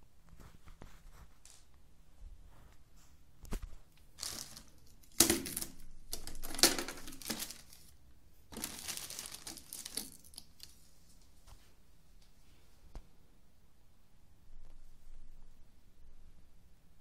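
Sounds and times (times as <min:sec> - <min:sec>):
plastic crinkling and rattling: 0:04.2 - 0:10.8.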